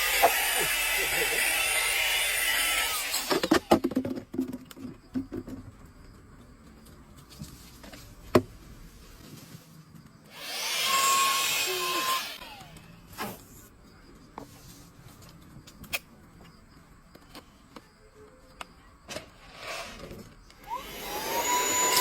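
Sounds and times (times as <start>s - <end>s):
handheld vacuum cleaner whine: 0.0s - 3.8s, 10.3s - 13.0s, 20.6s - 22.0s.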